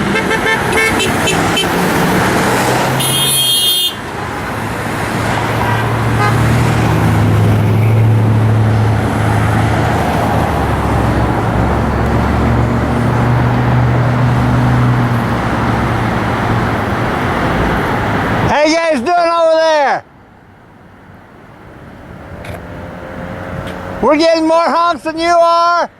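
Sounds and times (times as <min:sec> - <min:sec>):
car horn blast: 0:00.0 - 0:01.8, 0:02.9 - 0:04.1, 0:05.6 - 0:06.6
motorway traffic drone: 0:00.0 - 0:25.9.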